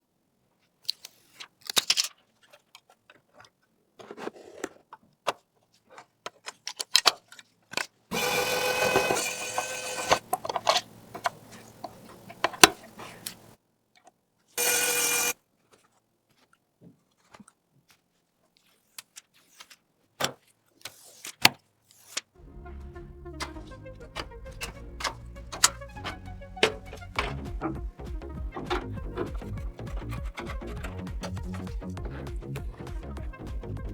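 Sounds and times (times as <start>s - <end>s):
steady whirring: 8.1s - 13.5s, 14.6s - 15.4s.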